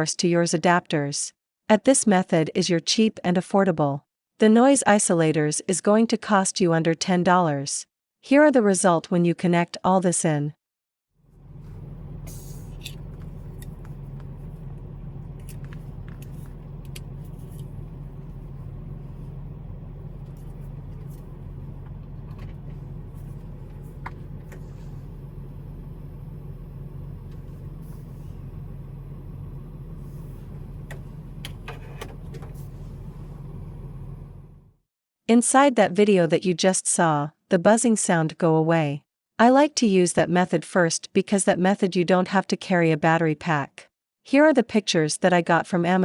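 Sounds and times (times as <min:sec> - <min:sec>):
car hum inside cabin: 0:11.2 - 0:34.8.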